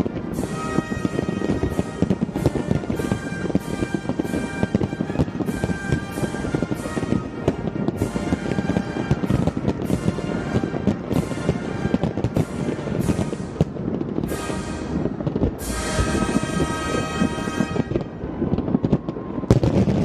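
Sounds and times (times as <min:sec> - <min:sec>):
fireworks bangs: 0:00.0 - 0:20.0
music playing: 0:14.4 - 0:18.1.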